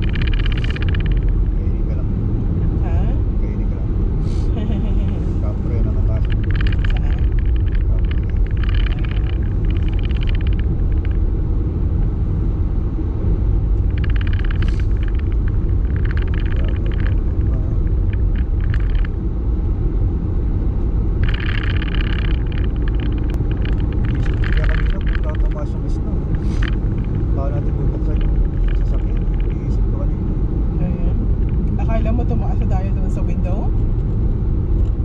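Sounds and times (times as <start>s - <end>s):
crackly noise: 0.0s - 2.8s, 4.7s - 12.2s, 13.5s - 19.5s, 20.3s - 30.6s
car driving rumble from inside: 0.0s - 35.0s.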